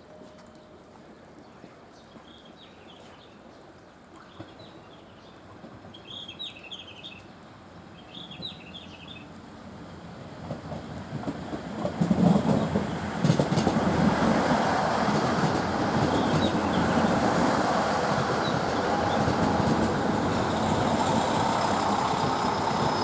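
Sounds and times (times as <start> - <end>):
diesel railcar passing: 5.5 - 23.0.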